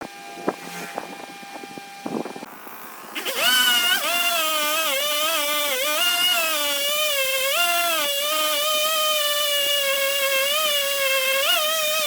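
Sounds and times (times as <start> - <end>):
wood lathe whine: 1.1 - 12.0
tool cutting wood squealing: 2.9 - 12.0.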